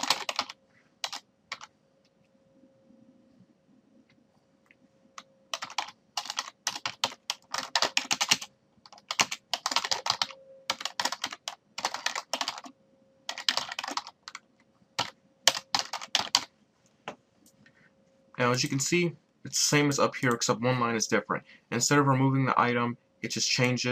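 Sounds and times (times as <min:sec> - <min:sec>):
computer keyboard typing: 0:00.0 - 0:01.7, 0:05.2 - 0:12.7, 0:13.3 - 0:16.5.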